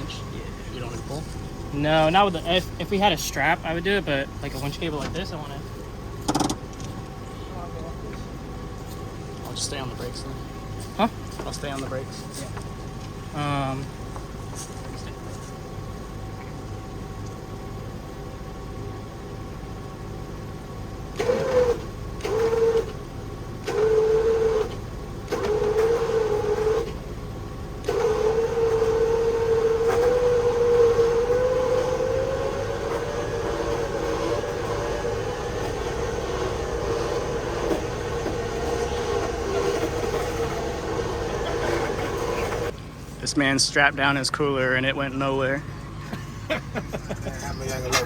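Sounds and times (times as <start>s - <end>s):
electric winch motor whining: 15.7s - 42.8s.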